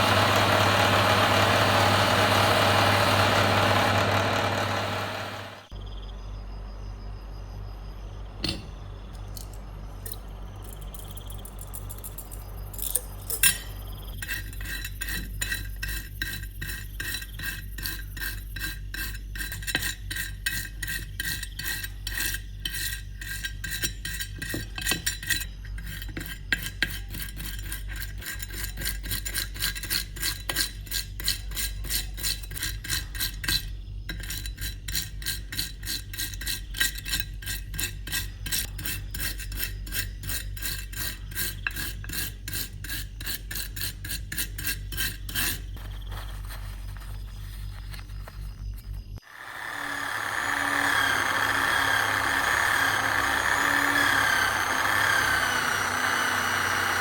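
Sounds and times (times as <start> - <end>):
file scraping metal blade: 0.0 - 5.7, 13.3 - 45.8, 49.5 - 57.0
steady low hum: 36.7 - 49.2.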